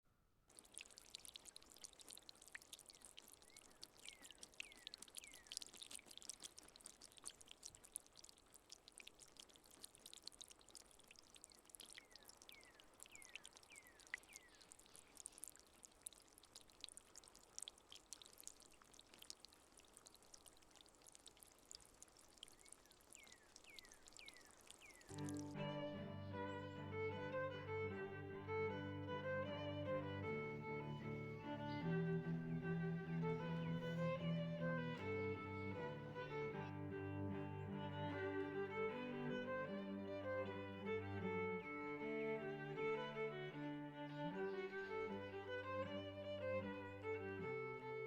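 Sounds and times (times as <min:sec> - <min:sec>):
water trickling and dripping: 0:00.4 - 0:36.6.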